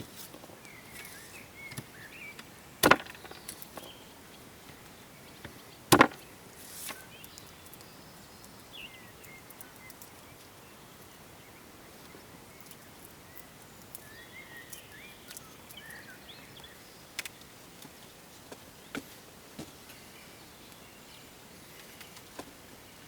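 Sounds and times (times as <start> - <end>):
steady outdoor hiss: 0.0 - 23.0
faint bird chirps: 6.9 - 17.1.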